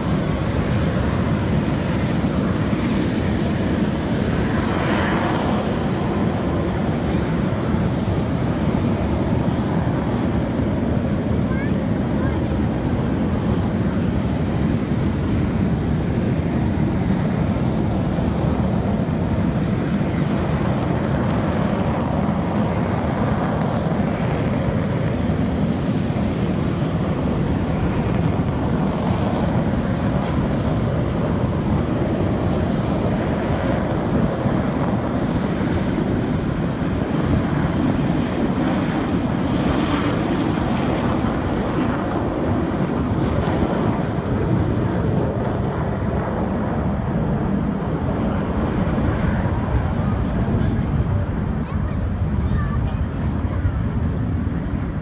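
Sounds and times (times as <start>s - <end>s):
aircraft engine rumble: 0.0s - 55.0s.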